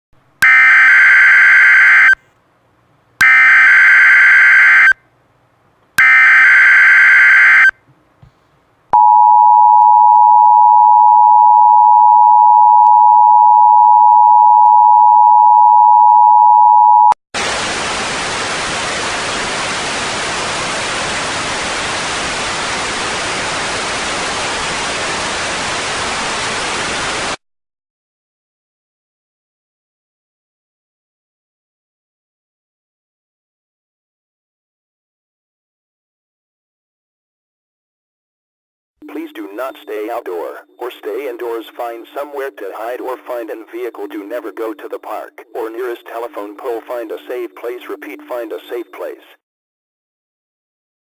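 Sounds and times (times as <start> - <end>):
two-tone attention signal: 6.0 - 7.7, 39.0 - 40.9
white-noise static: 17.4 - 27.4.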